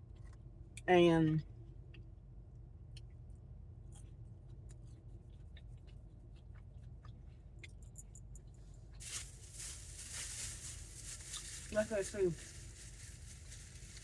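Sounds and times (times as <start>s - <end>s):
low steady hum: 0.0s - 14.0s
crunchy chewing: 2.9s - 14.0s.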